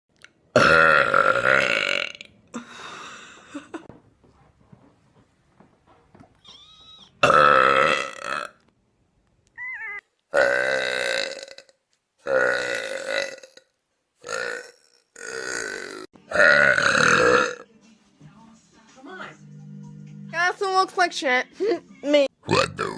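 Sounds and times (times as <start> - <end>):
woman burping: 0.6 - 2.7, 7.2 - 8.6, 14.3 - 17.6, 22.4 - 22.9.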